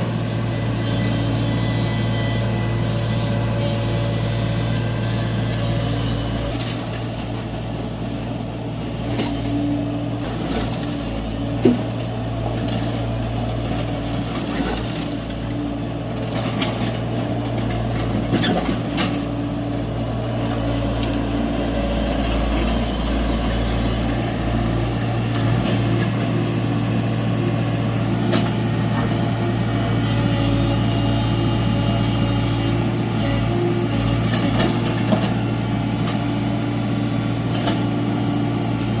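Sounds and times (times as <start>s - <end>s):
excavator diesel engine running: 0.0s - 39.0s.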